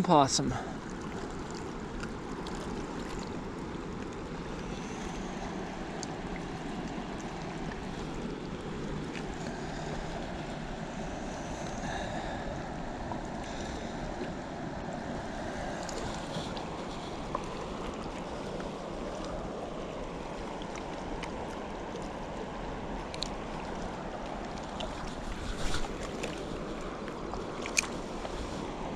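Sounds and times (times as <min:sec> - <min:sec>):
moving water rushing: 0:00.0 - 0:28.9.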